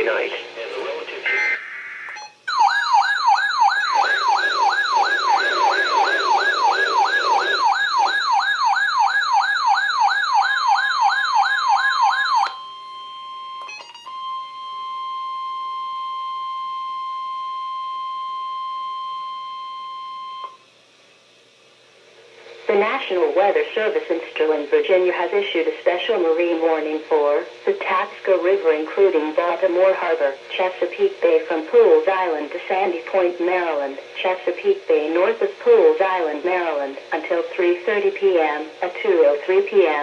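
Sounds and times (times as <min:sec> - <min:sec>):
steady warning alarm tone: 0:01.4 - 0:20.6
alert siren sweeping: 0:02.1 - 0:12.6.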